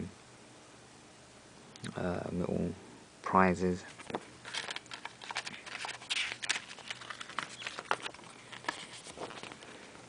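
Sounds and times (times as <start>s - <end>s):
paper rustling: 3.9s - 9.9s.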